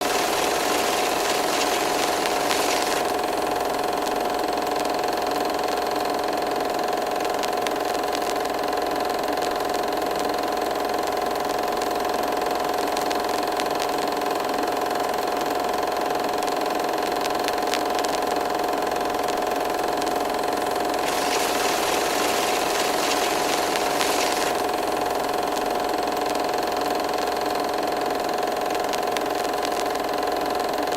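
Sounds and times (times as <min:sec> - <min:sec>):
faint ticks: 0:21.0 - 0:24.7, 0:28.7 - 0:30.0
motor humming: 0:21.0 - 0:24.8.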